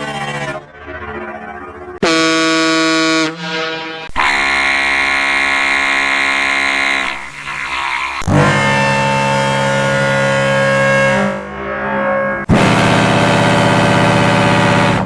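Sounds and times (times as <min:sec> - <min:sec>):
cruise ship horn blasts: 0:02.0 - 0:08.3.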